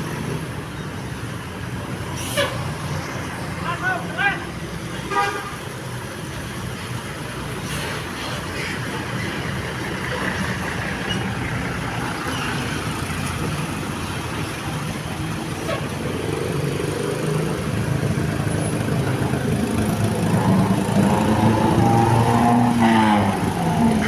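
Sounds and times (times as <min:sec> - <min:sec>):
traffic noise: 0:00.0 - 0:24.0.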